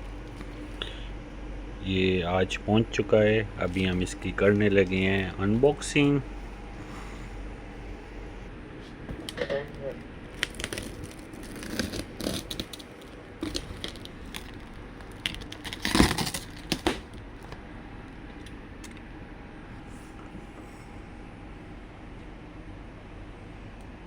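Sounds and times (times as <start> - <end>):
cardboard packaging crinkling and tearing: 10.2 - 17.5.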